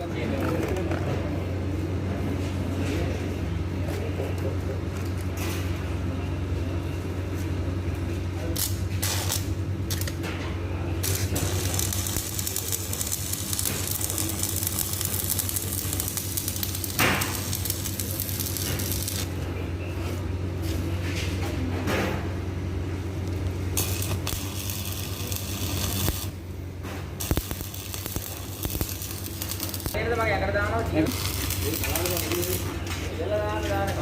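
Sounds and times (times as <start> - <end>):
welding arc crackling: 8.5 - 10.2, 11.0 - 19.5, 23.2 - 33.9.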